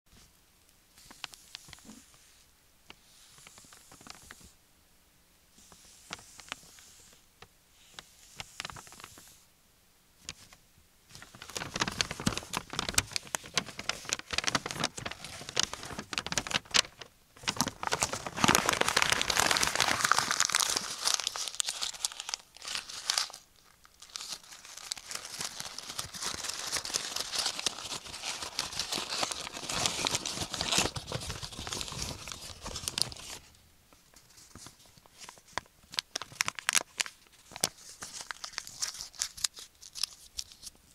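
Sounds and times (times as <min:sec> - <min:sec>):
paper crumpling and tearing: 0:03.2 - 0:04.5, 0:07.9 - 0:09.3, 0:10.3 - 0:33.5, 0:34.1 - 0:40.8.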